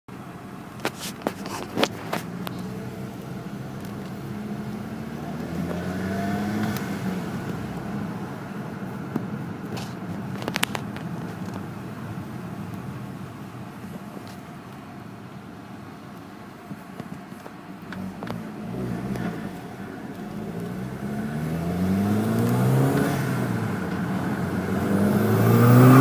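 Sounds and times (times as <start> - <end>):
car engine revving: 1.2 - 8.6, 17.8 - 26.0.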